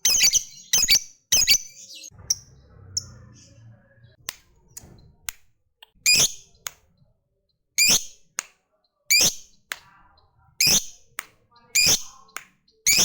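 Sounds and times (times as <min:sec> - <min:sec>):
parrot shrill squawking: 0:06.0 - 0:06.4.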